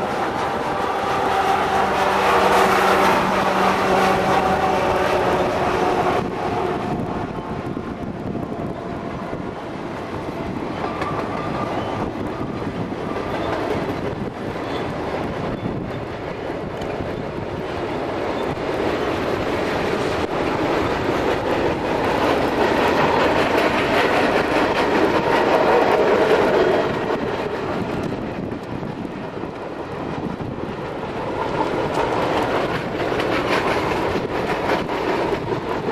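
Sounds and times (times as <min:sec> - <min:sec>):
freight train cars rumbling: 0:00.0 - 0:35.9.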